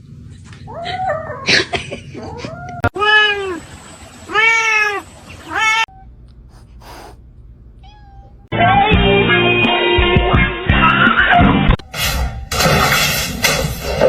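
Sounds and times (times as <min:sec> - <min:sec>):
cat meowing: 0:07.8 - 0:08.5
music: 0:08.5 - 0:14.0.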